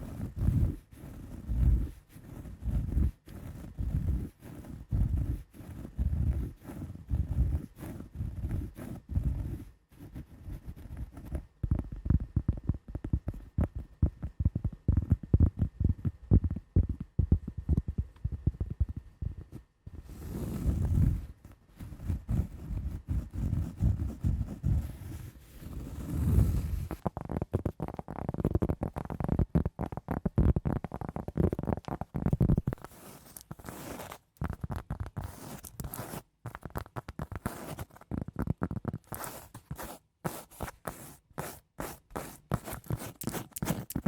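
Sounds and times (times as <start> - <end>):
rapid tapping on wood and cork: 10.7 - 19.7, 26.9 - 44.0.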